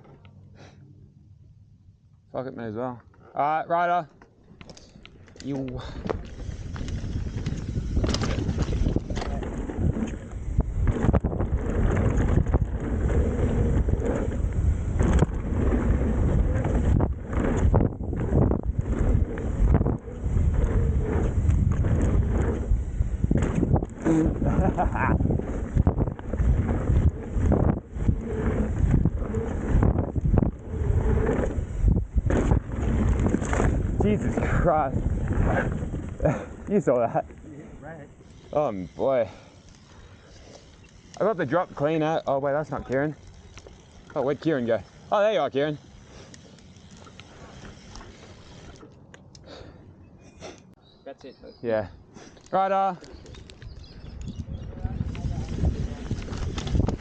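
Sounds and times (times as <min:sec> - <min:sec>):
tyres rattling over dirt and rock: 0:04.8 - 0:37.3
wind buffeting microphone: 0:05.6 - 0:39.4, 0:53.0 - 0:57.0
sharp knocks from bike: 0:23.3 - 0:24.0, 0:32.2 - 0:33.9.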